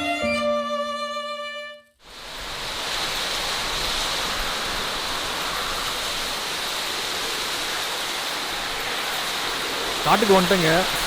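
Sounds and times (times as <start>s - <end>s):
thin high hiss: 2.2s - 11.0s.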